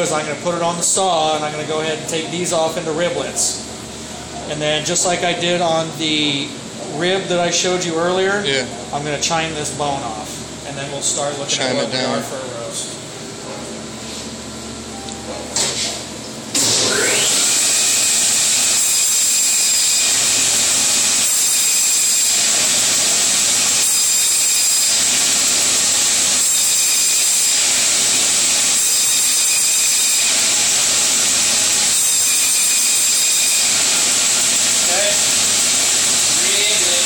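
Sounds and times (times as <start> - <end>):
band saw cutting bone: 16.5 - 37.0.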